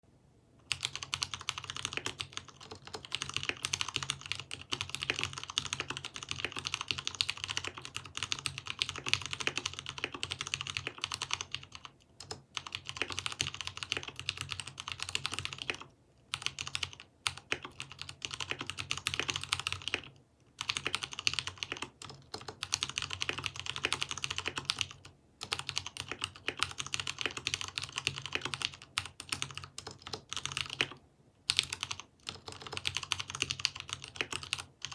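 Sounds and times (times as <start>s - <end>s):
typing on mechanical keyboard: 0.6s - 34.9s.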